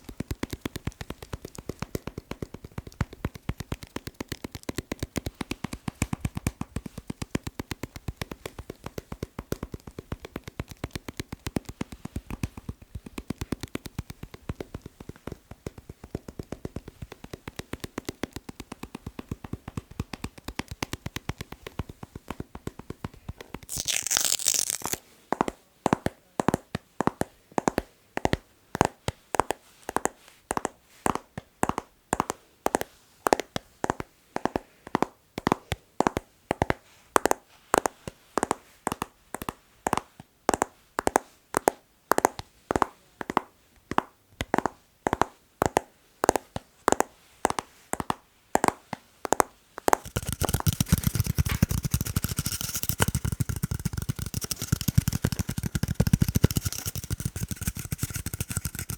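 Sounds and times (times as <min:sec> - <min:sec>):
continuous scratching: 0:00.0 - 0:25.0, 0:49.8 - 0:58.9
short sharp taps: 0:49.3 - 0:58.9.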